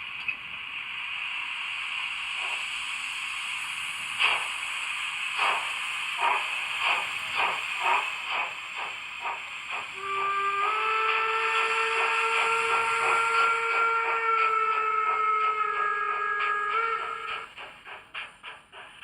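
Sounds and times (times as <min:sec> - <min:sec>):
steam exhaust chuffs: 0:00.7 - 0:19.0
steam whistle blast: 0:10.0 - 0:17.5.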